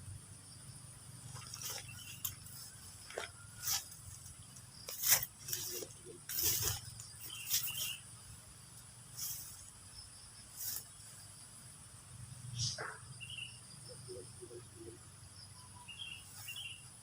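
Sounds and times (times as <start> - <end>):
insect chirring: 0.0 - 17.0
rustling scraping noises: 1.3 - 8.0, 9.1 - 9.8, 10.5 - 11.1.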